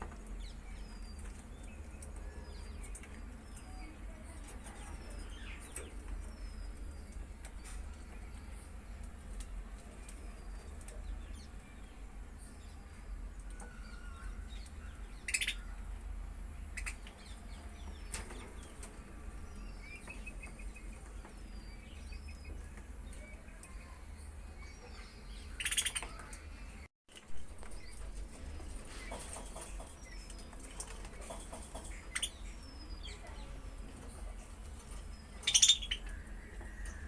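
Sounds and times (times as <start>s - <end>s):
budgerigars chirping: 15.2s - 15.7s, 24.7s - 26.3s, 35.3s - 37.0s
harsh rasping bird calls: 15.2s - 15.7s, 24.9s - 26.7s, 35.3s - 37.0s.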